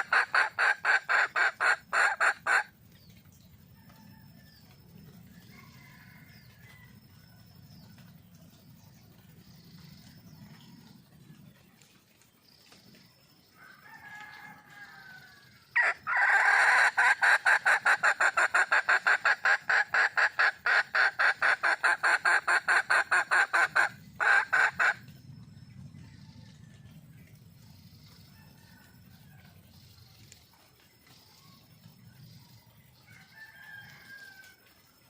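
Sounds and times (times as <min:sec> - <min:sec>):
hen calling: 0:00.0 - 0:02.7, 0:15.8 - 0:25.1
rapid cackling: 0:00.0 - 0:02.7, 0:15.8 - 0:25.1.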